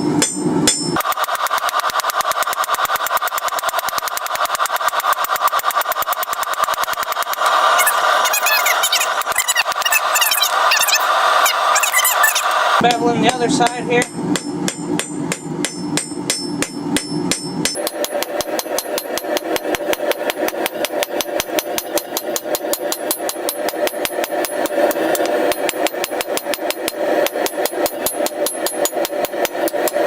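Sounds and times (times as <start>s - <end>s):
hammer striking metal on anvil: 0.0s - 1.2s, 13.2s - 30.0s.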